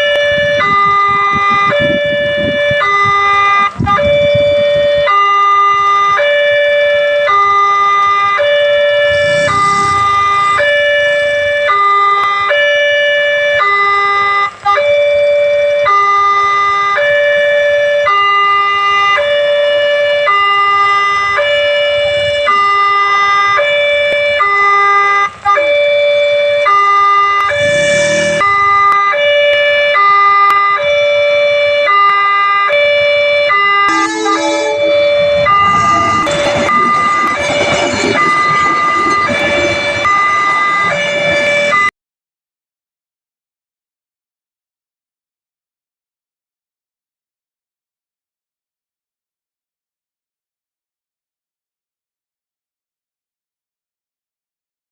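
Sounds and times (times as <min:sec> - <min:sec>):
level crossing warning siren: 0:00.0 - 0:41.9.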